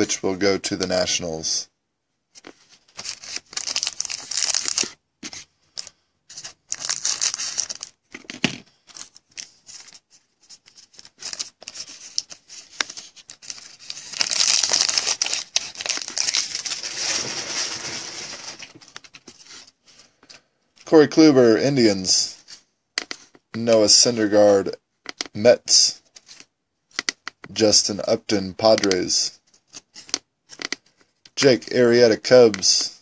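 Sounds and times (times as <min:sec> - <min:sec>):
card pack wrappers tearing: 0:03.0 - 0:05.0, 0:06.7 - 0:07.9, 0:10.9 - 0:18.8.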